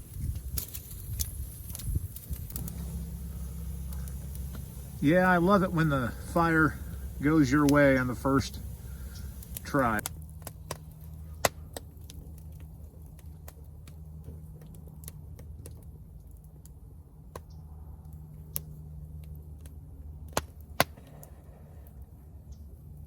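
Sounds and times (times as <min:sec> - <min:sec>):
steady low hum: 0:00.0 - 0:11.8
campfire crackling and popping: 0:00.0 - 0:23.0.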